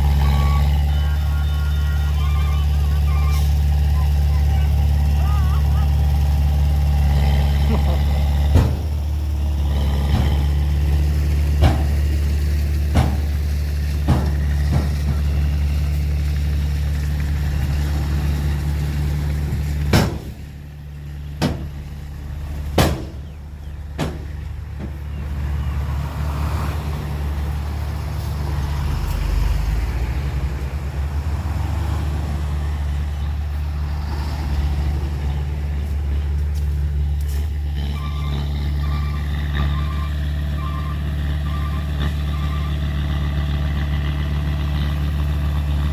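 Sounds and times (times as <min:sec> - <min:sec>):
heavy diesel engine running: 0:00.0 - 0:45.9
sharp knocks: 0:08.5 - 0:09.0, 0:12.9 - 0:13.4, 0:19.8 - 0:20.4, 0:21.4 - 0:21.8, 0:22.8 - 0:23.2, 0:24.0 - 0:25.0.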